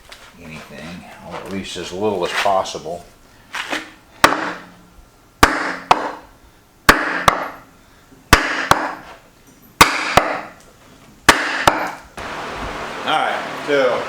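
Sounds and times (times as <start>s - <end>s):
hammer striking metal: 6.9s - 7.6s, 8.3s - 9.0s, 9.8s - 10.6s, 11.3s - 12.0s.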